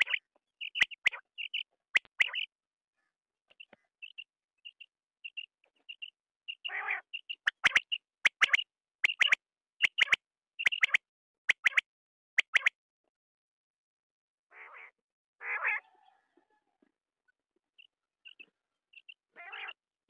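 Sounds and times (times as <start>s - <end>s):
quail calling: 0.0s - 2.5s, 3.6s - 11.7s, 14.5s - 16.2s, 18.3s - 19.8s
soft high chirps: 0.0s - 2.5s, 3.5s - 11.8s.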